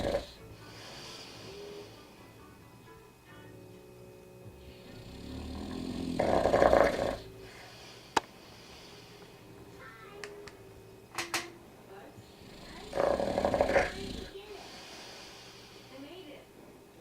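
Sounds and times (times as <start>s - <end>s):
pet snoring: 0.0s - 2.2s, 4.5s - 9.2s, 12.2s - 15.9s.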